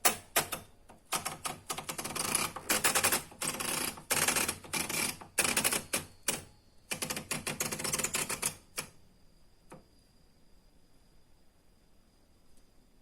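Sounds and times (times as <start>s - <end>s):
typewriter keys clacking: 0.0s - 8.9s.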